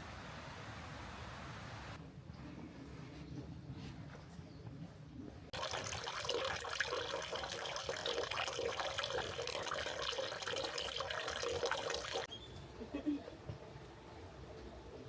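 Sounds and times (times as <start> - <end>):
running water splashing: 5.5 - 12.3.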